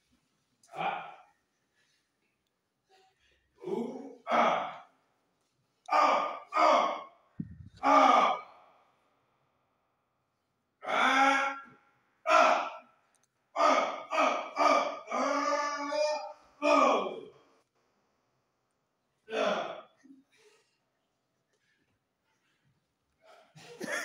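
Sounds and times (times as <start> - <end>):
person grunting and gasping: 3.6 - 4.9, 7.6 - 8.5, 19.3 - 19.9.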